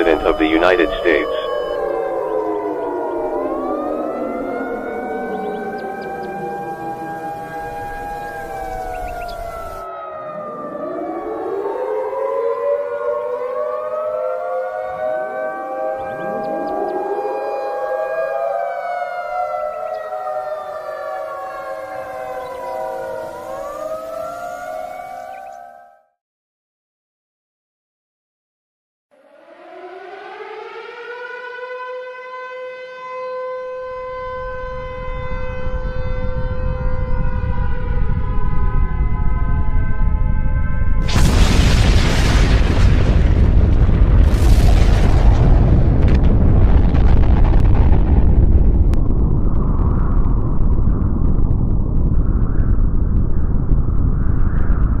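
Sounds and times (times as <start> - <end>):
low noise: 0.0 - 1.8
warning siren wailing: 0.0 - 26.1, 29.2 - 43.3.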